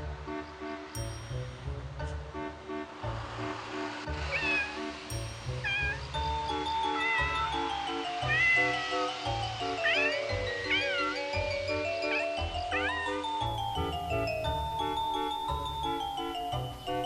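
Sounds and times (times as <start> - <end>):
background music with beat: 0.0 - 4.4
cat meowing: 4.3 - 4.9, 8.2 - 8.9, 9.8 - 11.4, 12.0 - 13.2.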